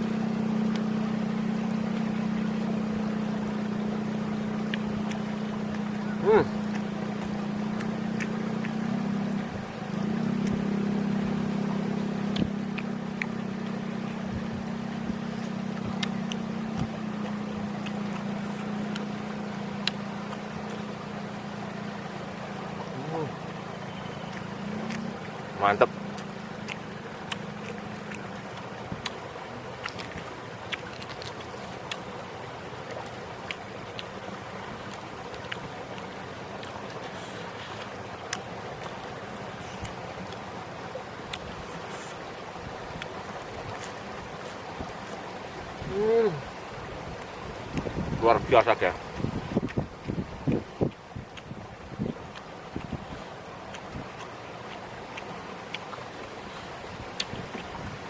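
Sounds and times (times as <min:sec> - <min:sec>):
small engine humming: 0:00.0 - 0:46.7
wet chewing smacks: 0:04.6 - 0:10.9, 0:12.2 - 0:14.5, 0:15.1 - 0:21.5, 0:22.9 - 0:45.4, 0:48.7 - 0:58.0
wind hiss on microphone: 0:44.7 - 0:54.2, 0:56.5 - 0:58.0.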